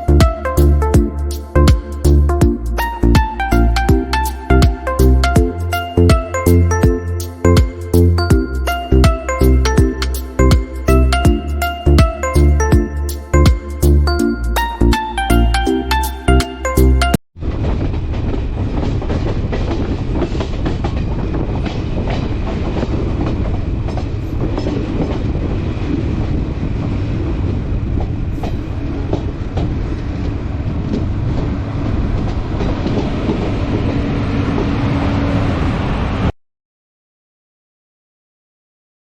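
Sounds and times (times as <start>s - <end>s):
train coaches rumbling: 0.0s - 36.3s
wheels clacking over rail joints: 17.4s - 35.4s.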